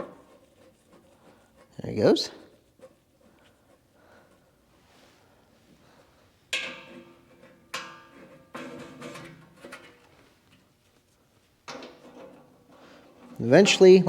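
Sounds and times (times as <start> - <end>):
sharp metal clanks: 6.5 - 9.4.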